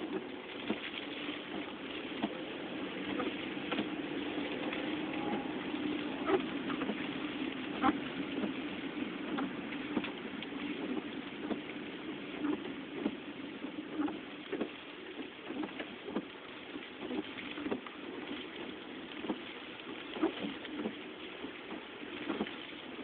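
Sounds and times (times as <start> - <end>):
steady hum: 0.0 - 14.2
rain on a car: 0.0 - 23.0
raindrops tapping on glass: 0.0 - 23.0.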